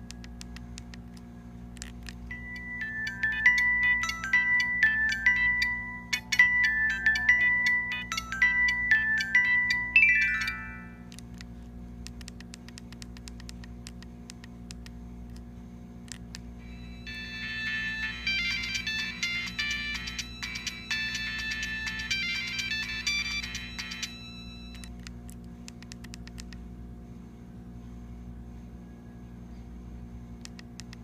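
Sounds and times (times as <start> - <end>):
low hum: 0.0 - 31.0
mobile phone ringtone melody: 2.3 - 11.1, 16.6 - 24.9.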